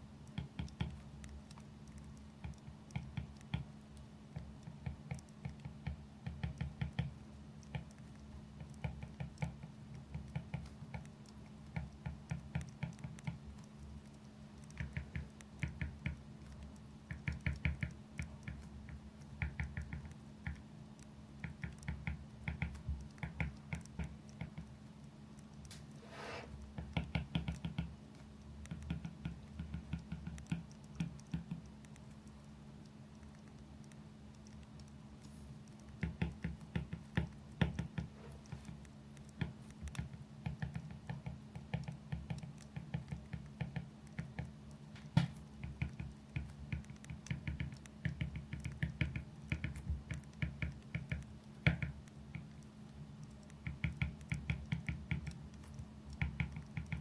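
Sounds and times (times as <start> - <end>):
pencil scratching on paper: 26.0 - 26.6.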